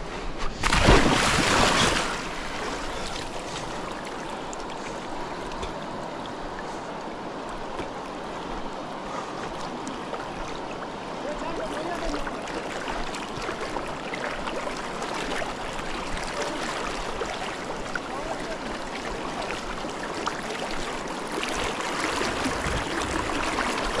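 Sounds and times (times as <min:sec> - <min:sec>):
water running and splashing: 0:00.6 - 0:04.6.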